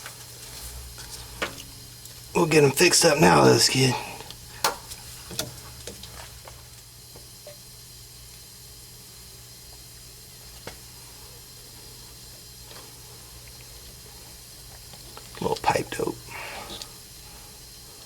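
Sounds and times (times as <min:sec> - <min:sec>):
steady low hum: 0:00.0 - 0:18.0
faint hiss: 0:12.8 - 0:18.0.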